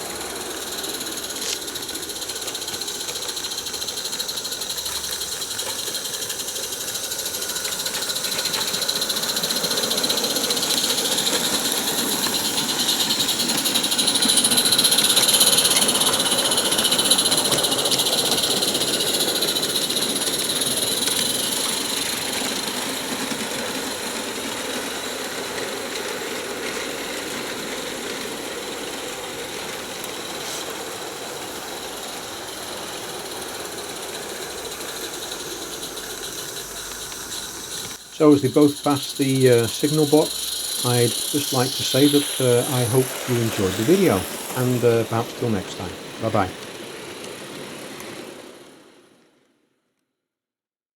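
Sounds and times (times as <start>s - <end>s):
steam hiss: 0.0s - 49.0s
steam locomotive chuffing: 0.0s - 49.1s.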